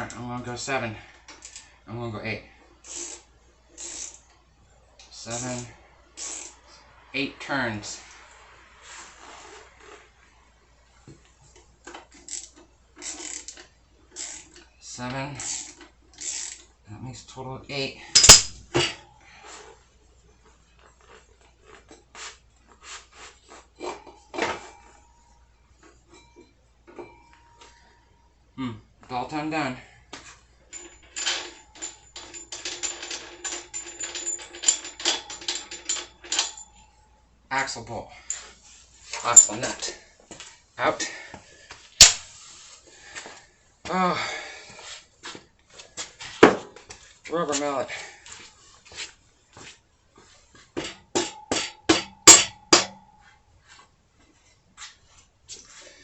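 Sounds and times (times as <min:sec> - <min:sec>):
ratchet wrench clicking: 0:02.8 - 0:04.2, 0:06.2 - 0:06.6, 0:12.2 - 0:13.6, 0:14.2 - 0:14.6, 0:15.4 - 0:16.7.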